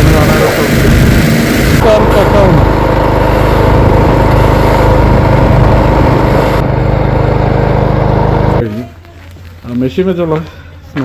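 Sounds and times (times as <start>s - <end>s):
snowblower engine running: 0.0s - 8.6s.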